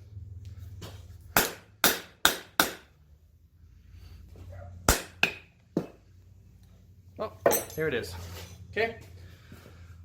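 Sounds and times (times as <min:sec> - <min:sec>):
low steady hum: 0:00.0 - 0:10.0
hammer striking steel on anvil: 0:01.4 - 0:02.9, 0:04.9 - 0:06.0.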